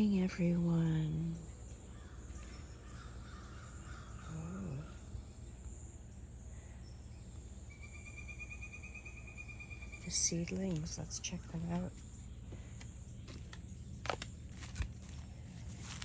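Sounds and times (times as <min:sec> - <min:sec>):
insects droning: 0:00.0 - 0:16.0
crows cawing: 0:01.9 - 0:05.1.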